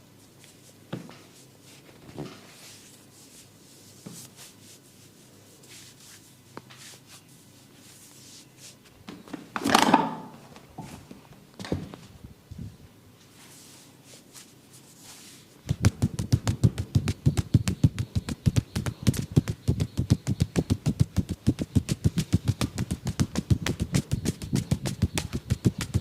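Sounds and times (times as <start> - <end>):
hands slapping on body: 15.7 - 26.0.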